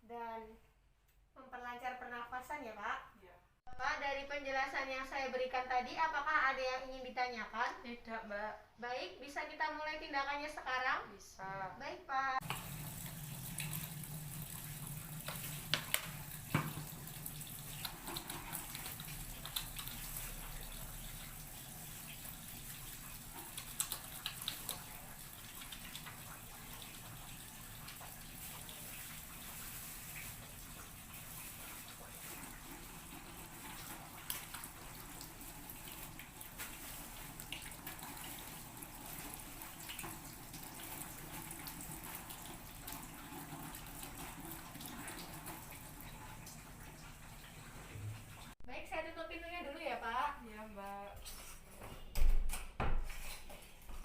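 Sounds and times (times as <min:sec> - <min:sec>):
water running from tap into sink: 0:12.4 - 0:48.6.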